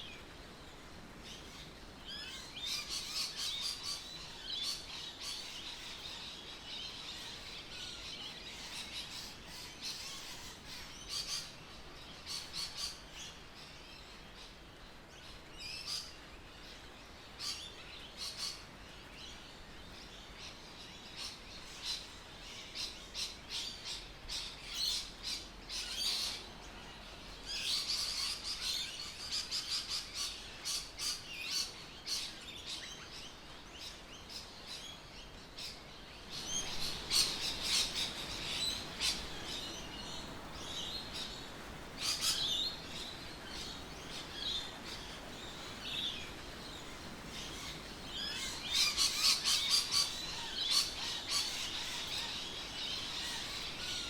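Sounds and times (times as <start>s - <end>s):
background hiss: 0.0s - 54.0s
birds chirping: 19.8s - 54.0s.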